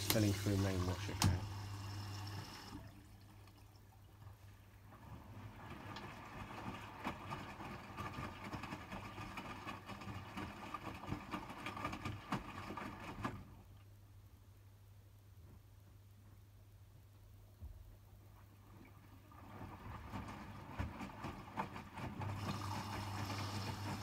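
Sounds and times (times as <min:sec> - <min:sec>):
wet laundry sloshing and knocking: 0:04.2 - 0:13.7, 0:17.6 - 0:24.0
washing machine drum tumbling: 0:19.4 - 0:24.0.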